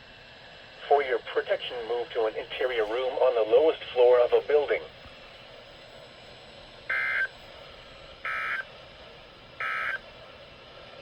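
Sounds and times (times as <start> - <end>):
alert data tone bursts: 6.9 - 7.3, 8.3 - 8.6, 9.6 - 10.0.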